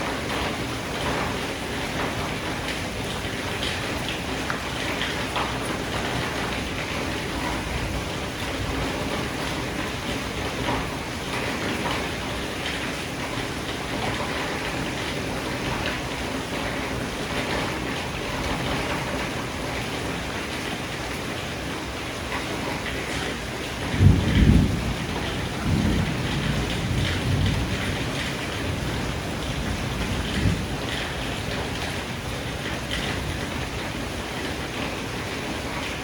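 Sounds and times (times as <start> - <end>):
steady rain: 0.0 - 36.0
thunder rumbling: 23.8 - 32.0.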